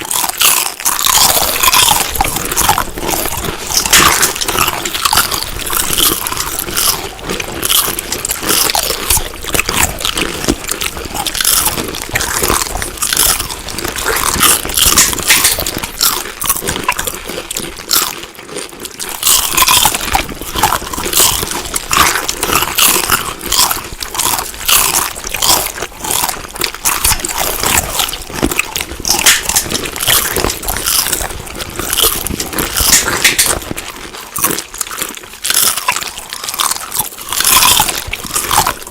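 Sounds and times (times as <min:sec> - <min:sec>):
crunchy food chewing: 0:00.0 - 0:38.9.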